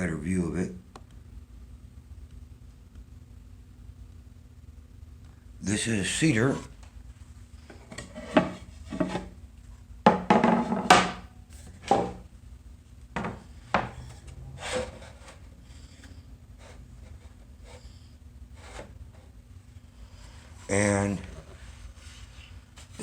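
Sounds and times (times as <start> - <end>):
wooden boards knocking and scraping: 7.9 - 9.3, 10.1 - 12.2, 13.2 - 15.4.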